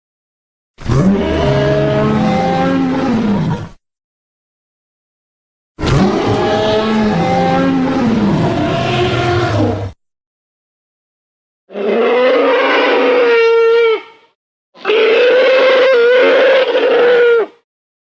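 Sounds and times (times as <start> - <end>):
deep dinosaur roar: 0.8 - 3.8, 5.8 - 10.0.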